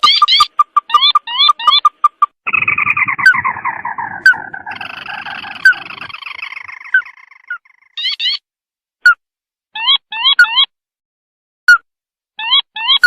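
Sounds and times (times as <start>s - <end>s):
bird chattering call with rattle: 0.0s - 8.4s
bird whistled notes: 2.5s - 8.4s.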